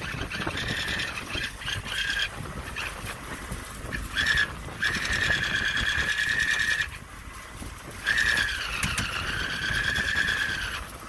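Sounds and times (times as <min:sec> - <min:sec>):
high steady squeal: 0:00.0 - 0:11.0.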